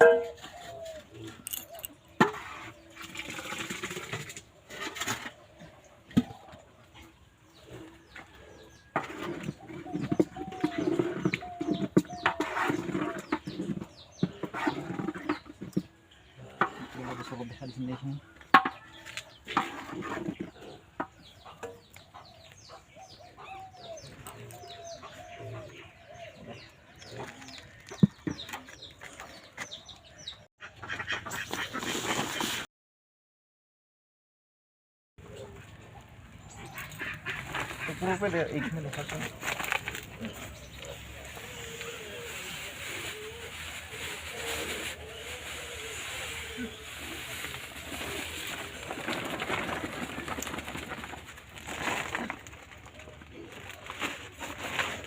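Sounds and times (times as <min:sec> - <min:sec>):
doves cooing: 0:00.0 - 0:15.9, 0:19.0 - 0:30.2, 0:35.2 - 0:55.0
chickens clucking: 0:00.0 - 0:32.4, 0:35.2 - 0:51.5
rustling scrape: 0:07.7 - 0:17.6, 0:18.7 - 0:21.2, 0:31.4 - 0:32.7, 0:36.7 - 0:55.0.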